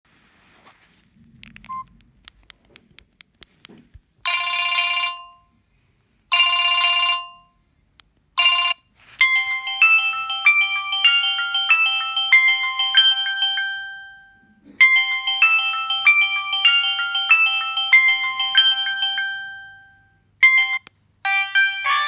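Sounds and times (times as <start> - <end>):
phone ringing chord: 4.3 - 5.5, 6.3 - 7.5, 8.4 - 22.0
ringtone melody of quick notes: 8.4 - 22.0.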